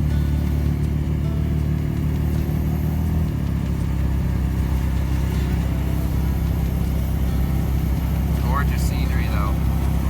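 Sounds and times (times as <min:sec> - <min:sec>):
car engine: 0:00.0 - 0:10.0
road noise inside car: 0:00.0 - 0:10.0.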